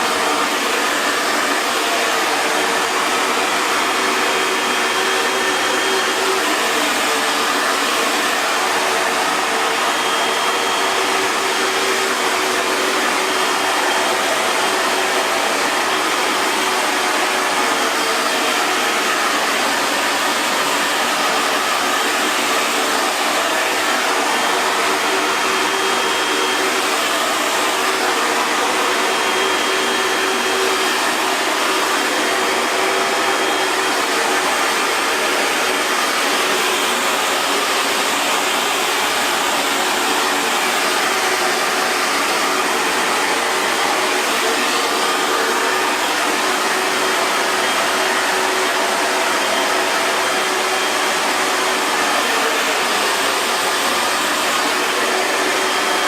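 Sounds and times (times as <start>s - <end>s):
hair dryer running: 0.0s - 56.0s.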